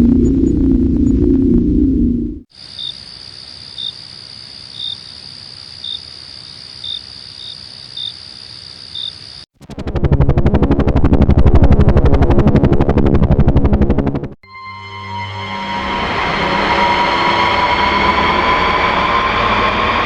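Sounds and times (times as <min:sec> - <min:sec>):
low droning hum: 0:00.0 - 0:02.5, 0:09.7 - 0:14.4
cricket chirp: 0:02.5 - 0:09.5
crickets trilling: 0:02.5 - 0:09.5
loud rapidly pulsing sound: 0:09.6 - 0:14.4.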